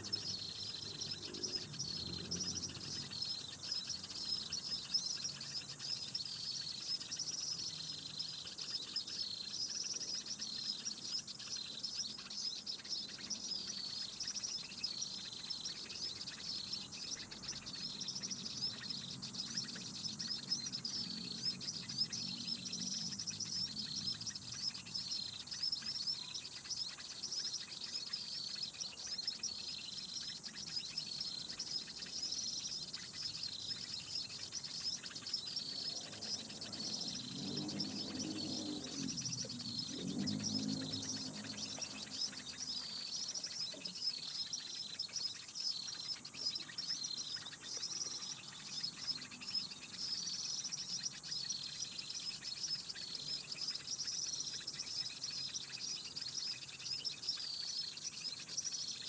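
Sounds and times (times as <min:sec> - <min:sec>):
faint high whine: 0:19.7 - 0:51.3.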